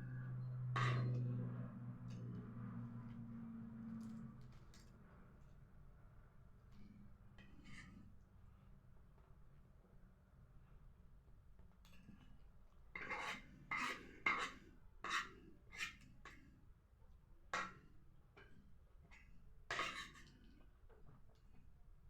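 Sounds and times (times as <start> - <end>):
utensil scraping a plate: 0.8 - 1.2, 13.0 - 16.0, 19.7 - 20.3.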